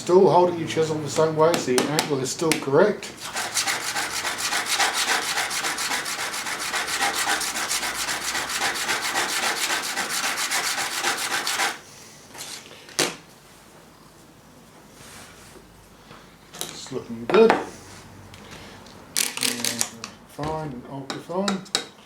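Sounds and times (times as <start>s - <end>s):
chisel scraping on sharpening stone: 3.2s - 11.8s.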